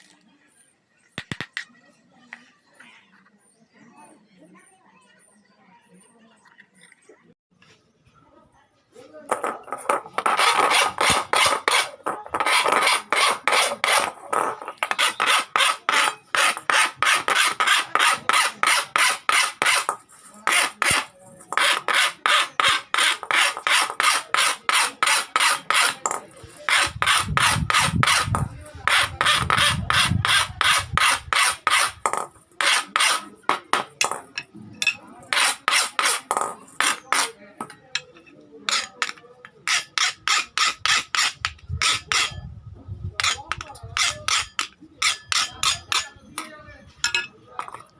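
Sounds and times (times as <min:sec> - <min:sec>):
hand file rasping on iron: 0:09.6 - 0:33.3, 0:35.2 - 0:37.4, 0:38.7 - 0:42.4, 0:43.2 - 0:46.1.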